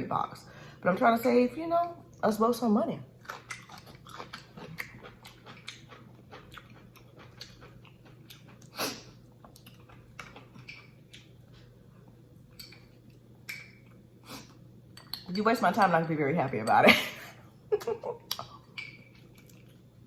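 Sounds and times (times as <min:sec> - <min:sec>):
chewing and lip smacking: 0:03.2 - 0:15.3, 0:18.2 - 0:19.9.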